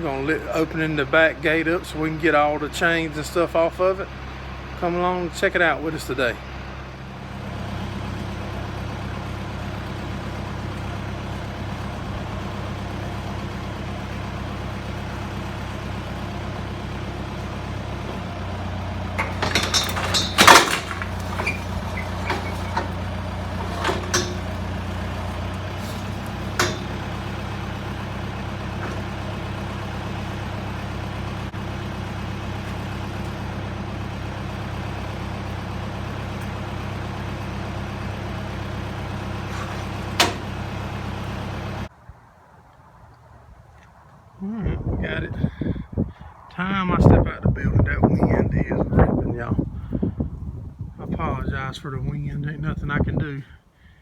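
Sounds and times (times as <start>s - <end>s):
tractor engine idling: 0.0s - 42.0s
metal clanks and rattles: 10.7s - 33.9s, 38.8s - 40.8s
sharp metal clang: 23.6s - 24.6s, 26.6s - 27.0s.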